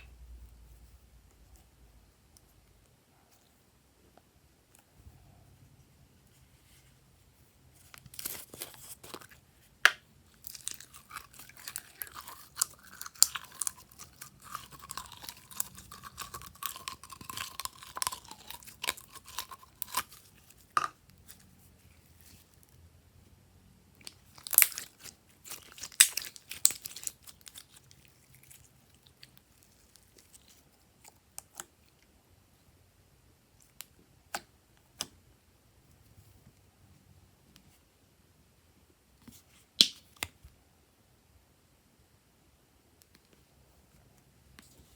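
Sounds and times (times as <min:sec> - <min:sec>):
slime popping and crackling: 0:09.8 - 0:20.9, 0:24.0 - 0:30.4.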